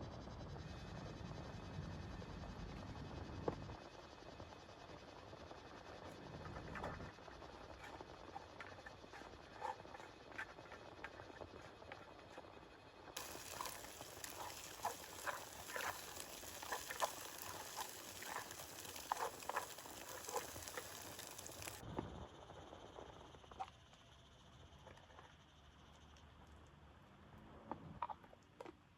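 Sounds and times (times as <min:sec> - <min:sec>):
raindrops tapping: 0:13.2 - 0:21.8
steady rain hiss: 0:13.2 - 0:21.8.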